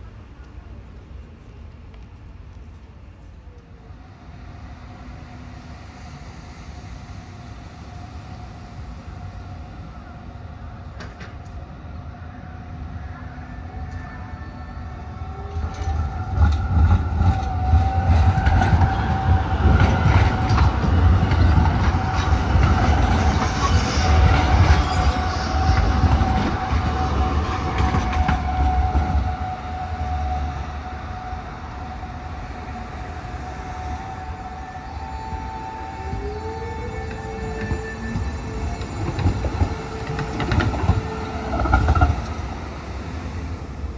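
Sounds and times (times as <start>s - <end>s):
train passing rumble: 0.0s - 43.9s
steady high tone: 21.9s - 43.6s.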